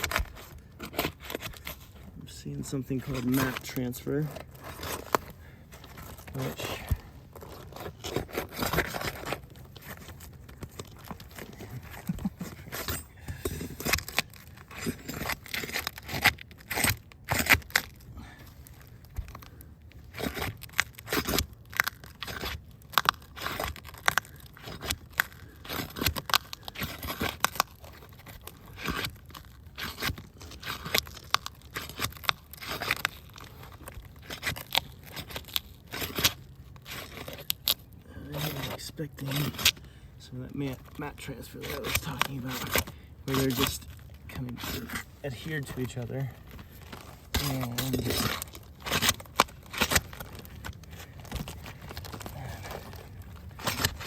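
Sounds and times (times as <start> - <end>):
roof shingles tearing and scraping: 0.0 - 54.0.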